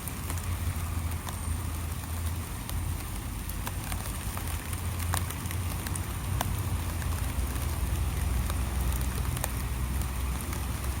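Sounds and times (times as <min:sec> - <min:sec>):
light rain patter: 0:00.0 - 0:11.0
raindrops ticking on surfaces: 0:00.0 - 0:11.0.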